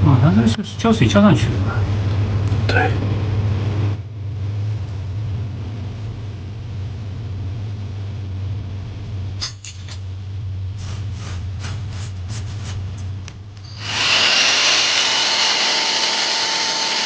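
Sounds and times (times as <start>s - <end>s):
low hum: 0.0s - 17.0s
short scraping strokes: 10.8s - 13.1s.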